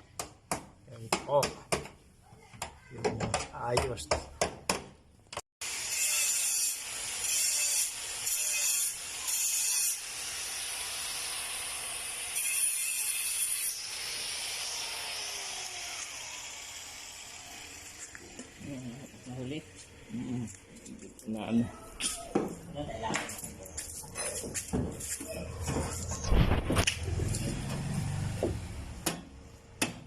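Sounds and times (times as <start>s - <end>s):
power tool grinding sheet metal: 5.6s - 18.6s.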